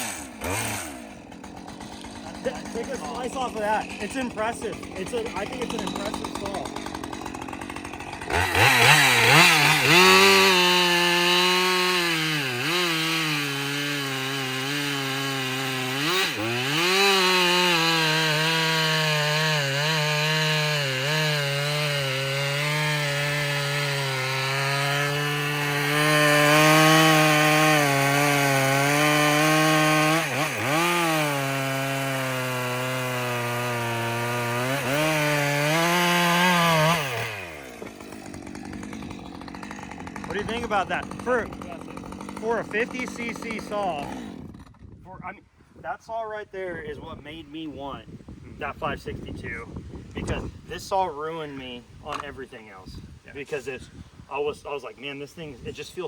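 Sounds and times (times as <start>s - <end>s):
chainsaw cutting log: 0.0s - 45.2s, 50.1s - 52.7s.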